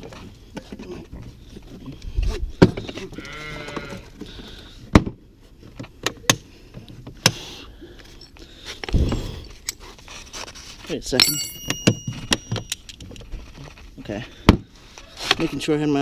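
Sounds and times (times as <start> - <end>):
metal tools clinking: 9.0 - 9.9, 11.0 - 13.3.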